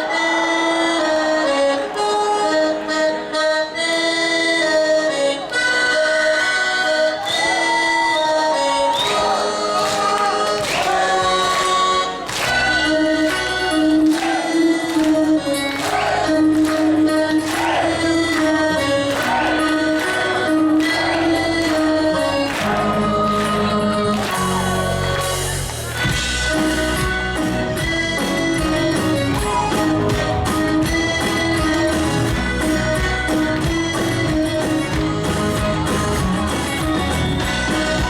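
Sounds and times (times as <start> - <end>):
choir-like melody: 0.0 - 38.0
bass part: 22.6 - 38.0.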